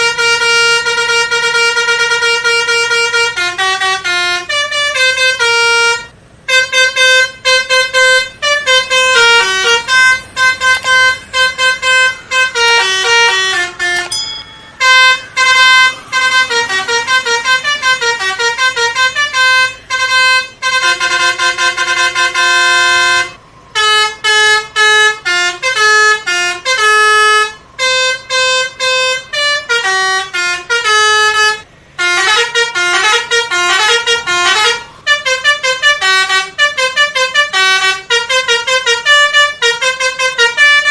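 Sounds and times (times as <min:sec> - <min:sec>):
multi-tone bus horn melody: 0:00.0 - 0:40.9.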